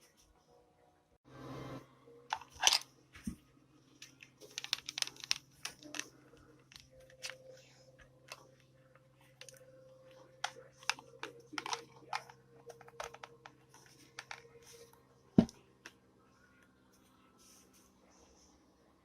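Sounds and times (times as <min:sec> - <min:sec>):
faint steady hum: 0:00.0 - 0:19.0
objects clicking and tapping: 0:04.0 - 0:07.4, 0:09.3 - 0:14.8.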